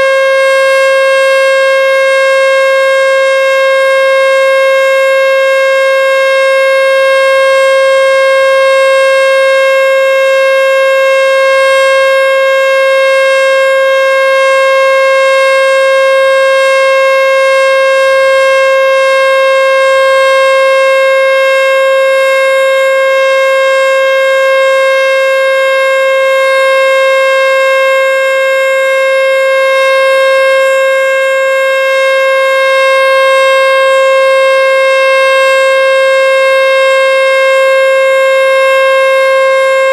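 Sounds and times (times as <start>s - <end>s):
steady warning siren tone: 0.0s - 39.9s.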